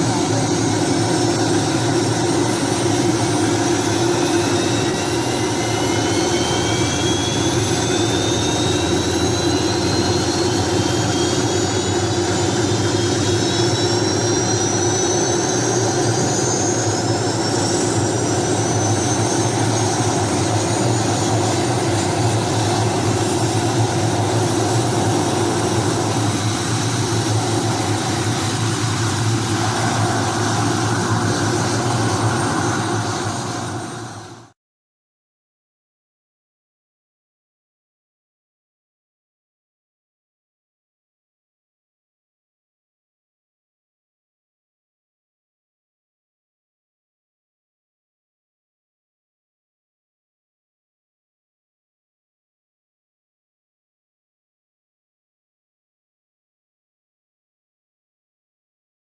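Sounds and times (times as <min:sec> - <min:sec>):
high whining tones: 0:00.0 - 0:34.5
loud engine drone: 0:00.0 - 0:34.6.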